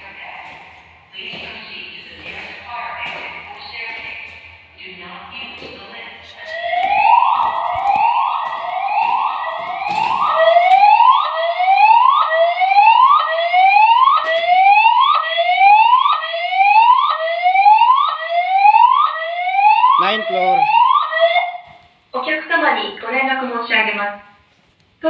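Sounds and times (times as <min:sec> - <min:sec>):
fire alarm rising sweep tone: 0:06.5 - 0:21.6.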